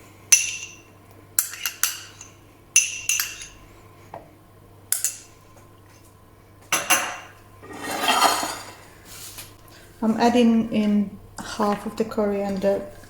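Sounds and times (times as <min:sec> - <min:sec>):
metal spoon clinking on container rim: 0:01.4 - 0:03.6.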